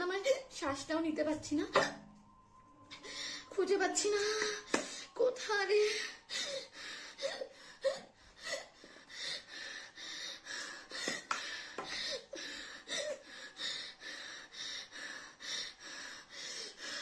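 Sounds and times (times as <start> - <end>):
woman gasping for breath: 5.9 - 17.0.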